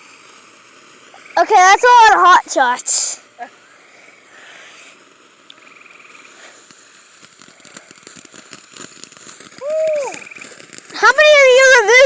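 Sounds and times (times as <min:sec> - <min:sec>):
firework crackling pops: 0:00.0 - 0:12.0
firework hissing: 0:00.0 - 0:12.0.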